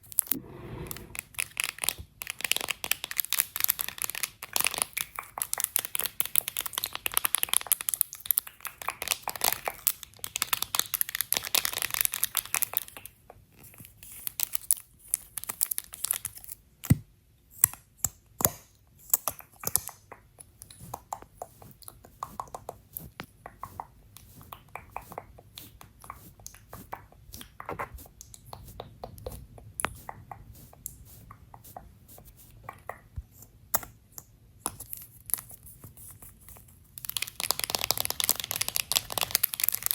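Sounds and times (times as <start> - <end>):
packaging crinkling and rustling: 37.0 - 39.9.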